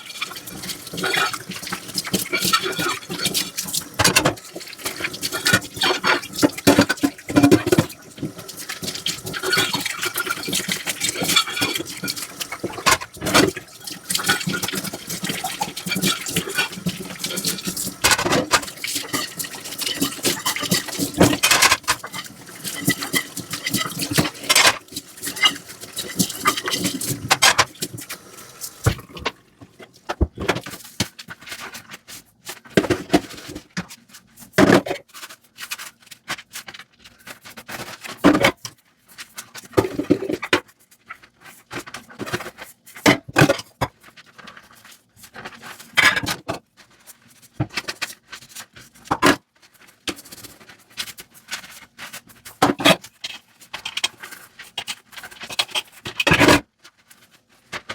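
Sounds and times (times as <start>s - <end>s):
water running into sink: 0.0s - 30.5s
plates and utensils clinking: 0.2s - 30.6s.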